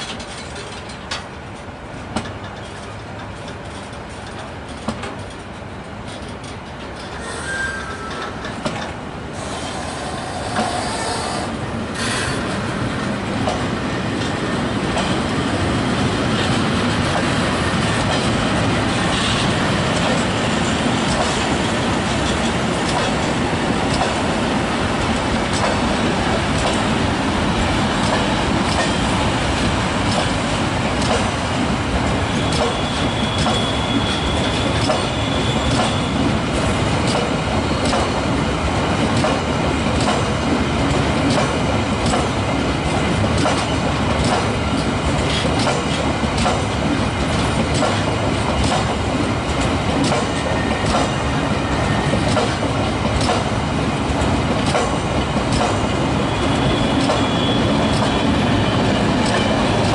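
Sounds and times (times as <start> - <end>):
train wheels clicking over rail joints: 0.0 - 59.9
wheel squeal: 7.1 - 8.5, 32.3 - 36.2, 56.3 - 58.7.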